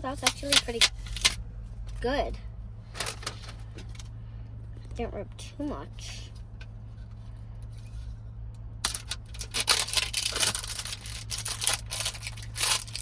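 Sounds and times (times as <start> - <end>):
low steady hum: 0.0 - 13.0
crackles: 8.8 - 13.0
package rustling and crinkling: 8.8 - 13.0.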